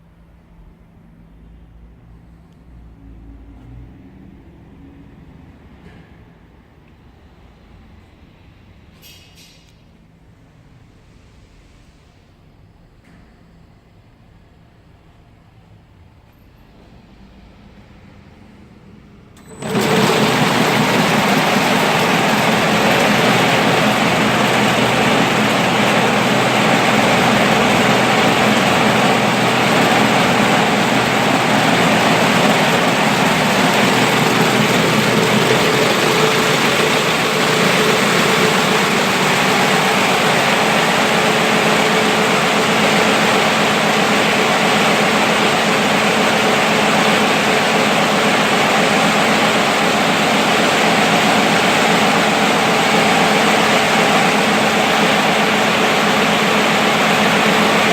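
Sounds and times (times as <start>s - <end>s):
braiding machine running: 19.4s - 57.9s.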